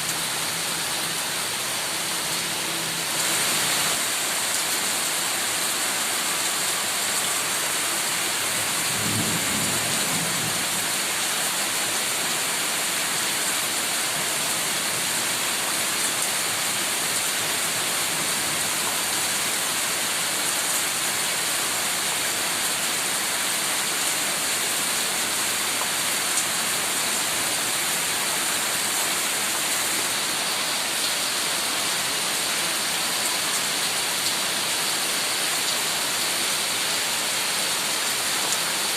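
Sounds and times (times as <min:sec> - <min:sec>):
heavy rain falling: 0:00.0 - 0:38.9
low rumble of thunder: 0:08.8 - 0:10.7.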